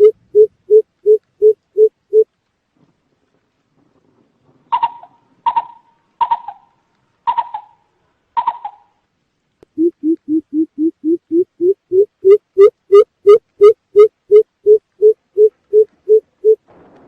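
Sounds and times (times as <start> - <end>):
bird deep hollow hoots: 4.7 - 7.8, 8.4 - 9.0, 9.8 - 16.6
bird sharp calls: 4.7 - 9.0.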